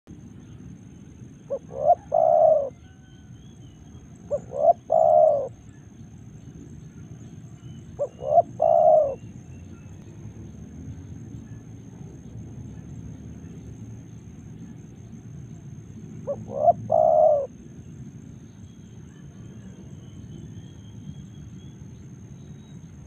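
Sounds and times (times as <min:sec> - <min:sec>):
dove cooing: 0:01.5 - 0:03.3, 0:04.2 - 0:05.8, 0:07.9 - 0:09.4, 0:16.2 - 0:17.6.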